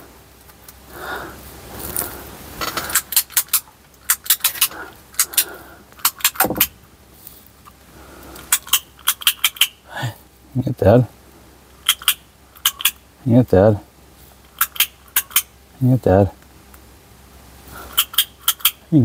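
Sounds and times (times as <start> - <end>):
metal parts clicking and clinking: 2.6 - 5.4.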